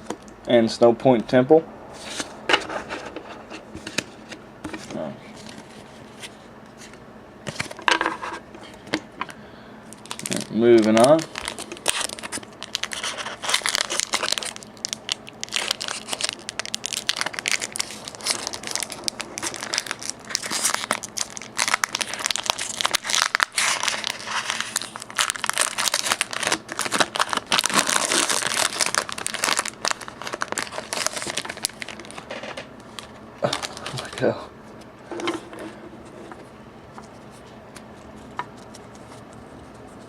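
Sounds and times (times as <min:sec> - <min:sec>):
foil wrapper crinkling: 0:09.9 - 0:34.4.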